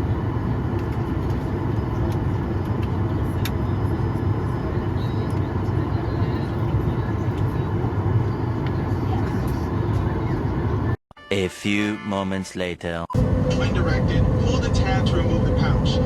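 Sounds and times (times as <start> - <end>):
airliner cabin rumble: 0.0 - 11.0, 13.2 - 16.0.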